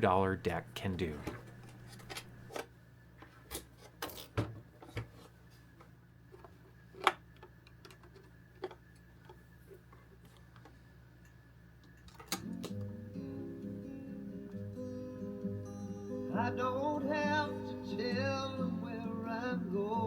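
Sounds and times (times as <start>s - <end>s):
steady low hum: 0.0s - 3.4s
cassette deck mechanical clicks: 11.9s - 12.9s.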